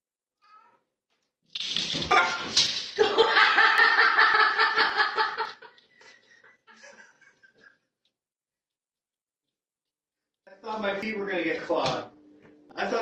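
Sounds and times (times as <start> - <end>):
person laughing loudly: 3.0 - 5.7.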